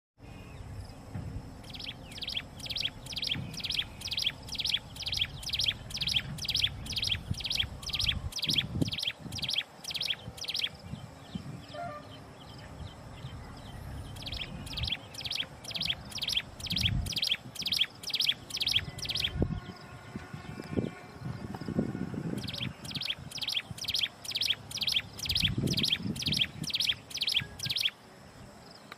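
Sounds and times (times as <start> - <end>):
bird calling sharp notes: 1.6 - 10.8, 14.2 - 19.5, 22.4 - 28.0.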